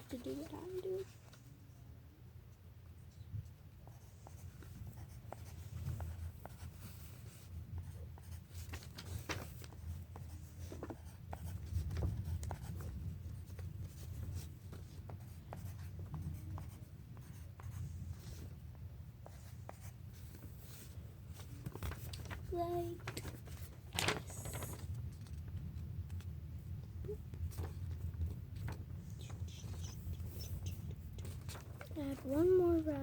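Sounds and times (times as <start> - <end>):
pencil scratching on paper: 3.8 - 8.6, 10.1 - 12.8, 13.8 - 18.5, 19.2 - 21.0
paper and book handled: 4.1 - 15.1, 19.3 - 26.3, 27.1 - 33.0.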